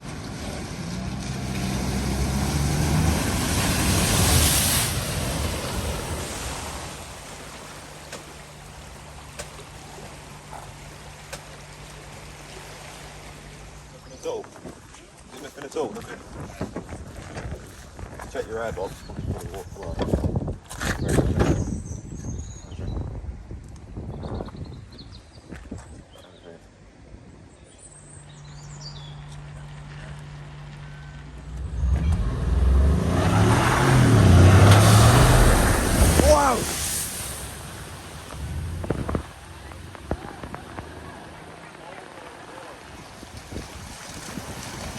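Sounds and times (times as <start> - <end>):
vehicle engine: 0.0 - 14.2, 28.0 - 44.9
floodwater rushing: 0.0 - 15.6, 30.2 - 44.9
water splashing: 0.0 - 17.1, 30.5 - 44.9.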